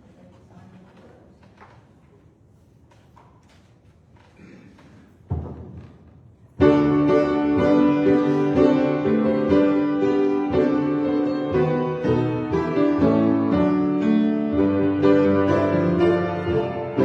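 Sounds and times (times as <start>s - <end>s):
piano music: 6.6s - 17.0s.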